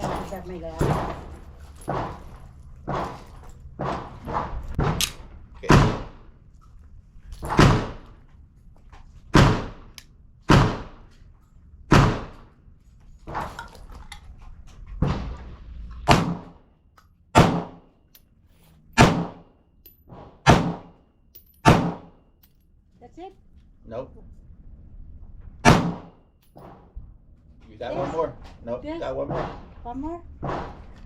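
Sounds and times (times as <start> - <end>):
handgun shots with echo: 17.4 - 17.9, 19.0 - 19.5, 20.4 - 21.0, 21.6 - 22.2, 25.6 - 26.2.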